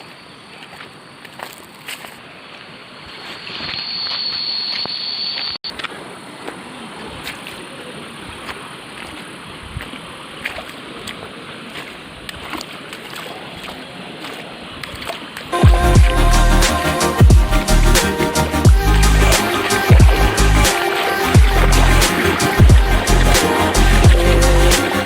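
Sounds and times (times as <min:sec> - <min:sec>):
waterfall and stream rushing: 0:05.7 - 0:25.0.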